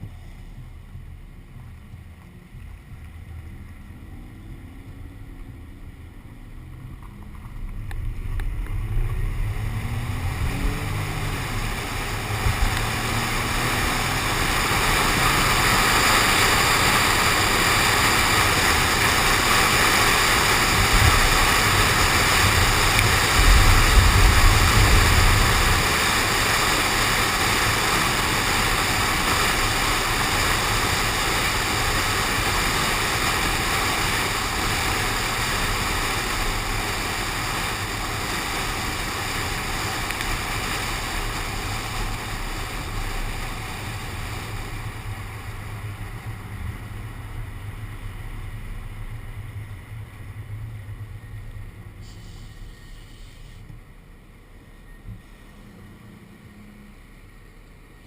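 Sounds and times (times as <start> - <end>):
low rumble: 0.0 - 15.9, 20.5 - 57.8
rushing wind and road noise: 0.0 - 58.0
faint rising engine note: 2.3 - 14.6.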